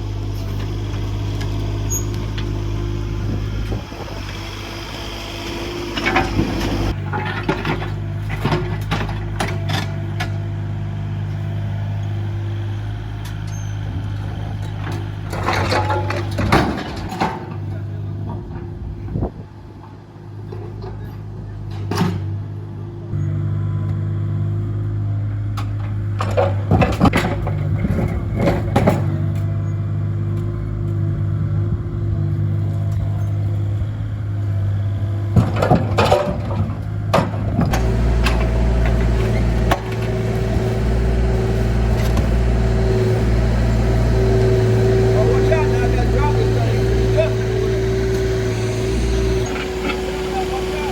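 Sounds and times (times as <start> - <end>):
diesel engine under load: 0.0 - 50.9
concrete clanks and knocks: 6.0 - 10.3, 14.7 - 18.7, 25.6 - 29.5, 35.3 - 40.9.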